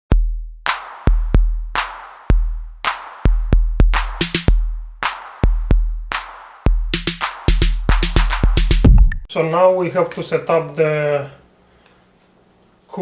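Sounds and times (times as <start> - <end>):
booming kick drums: 1.1 - 2.7, 3.3 - 9.3
electronic music: 3.9 - 4.6, 6.1 - 9.3
sharp snare hits: 4.0 - 9.3.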